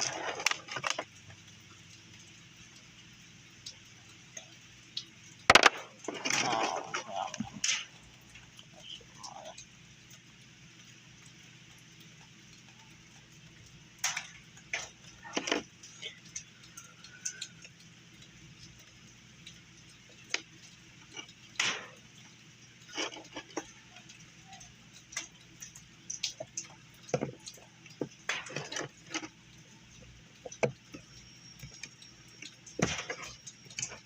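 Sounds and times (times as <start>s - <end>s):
small hard objects clicking: 0.0s - 1.1s, 5.0s - 9.7s
faint steady hum: 0.0s - 34.0s.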